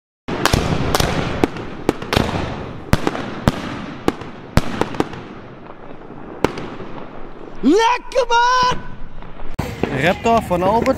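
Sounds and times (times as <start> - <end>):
fireworks crackling: 0.3 - 10.9
fireworks shots: 0.3 - 10.9.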